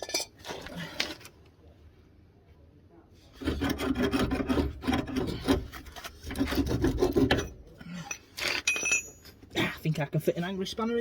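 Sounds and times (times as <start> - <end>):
hand tool scraping metal: 3.3 - 9.3.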